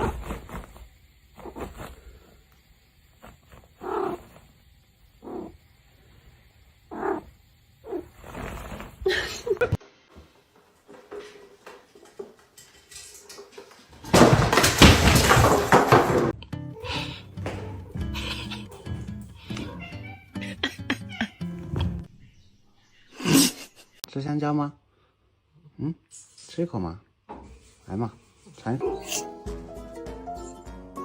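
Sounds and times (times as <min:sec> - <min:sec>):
cat meowing: 0:16.8 - 0:21.9.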